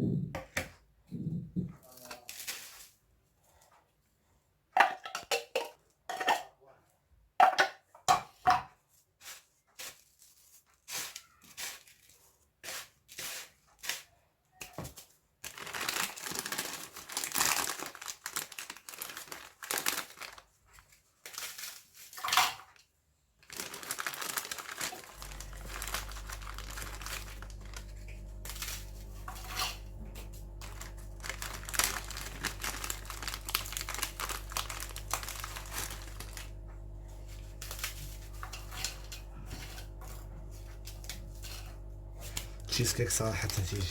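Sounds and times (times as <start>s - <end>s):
biscuits crunching: 15.5s - 22.1s, 23.4s - 43.9s
steady low hum: 24.9s - 43.9s.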